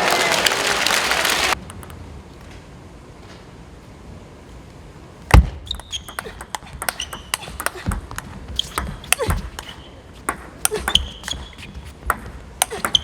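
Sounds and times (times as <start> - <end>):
shoe squeaks: 5.5 - 10.2, 10.8 - 12.0
table tennis ball clicking: 5.7 - 9.7.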